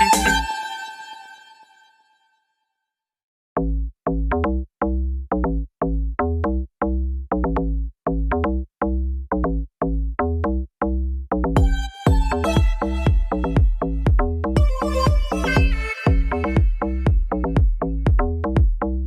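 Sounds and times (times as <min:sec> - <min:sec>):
electronic music: 0:00.0 - 0:01.3, 0:11.6 - 0:18.6
deep bass notes: 0:03.6 - 0:19.0
drum machine beat: 0:11.5 - 0:19.0.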